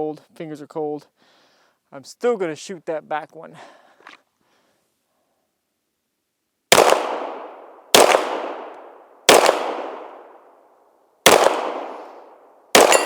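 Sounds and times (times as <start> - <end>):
pistol shots with echo: 6.7 - 10.4, 11.2 - 13.0.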